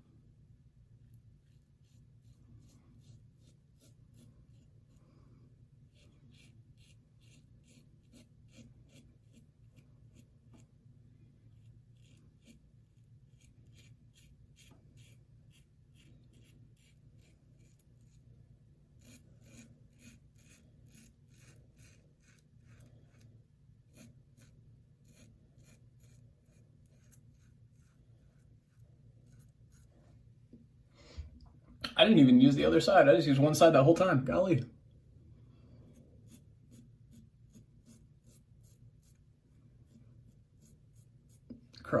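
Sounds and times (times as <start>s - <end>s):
razor scraping stubble: 1.4s - 5.0s, 5.9s - 10.7s, 11.5s - 18.3s, 18.9s - 30.0s, 35.9s - 41.6s.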